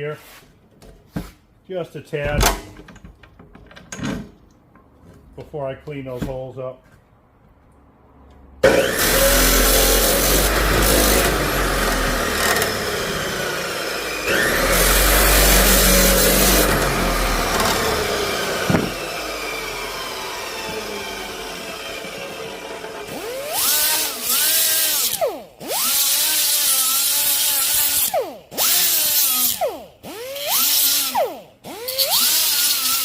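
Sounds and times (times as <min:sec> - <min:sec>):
power tool cutting steel: 0:08.6 - 0:33.0.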